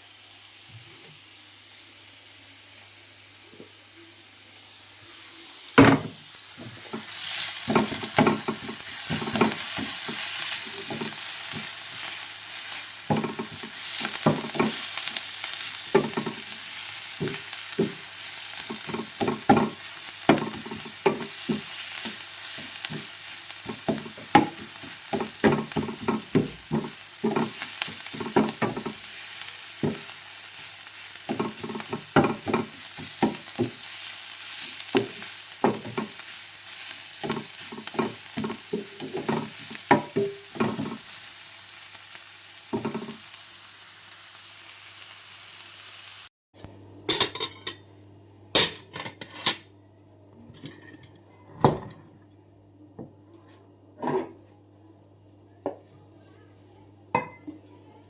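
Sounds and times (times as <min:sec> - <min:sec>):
food sizzling in a pan: 0:00.0 - 0:46.3.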